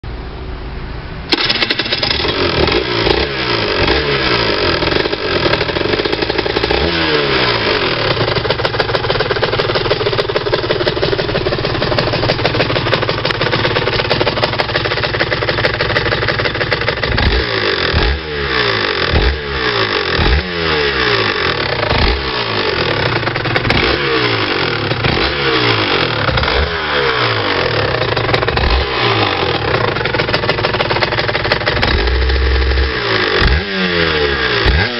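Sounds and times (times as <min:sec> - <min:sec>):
motorcycle engine revving: 0:01.3 - 0:34.9.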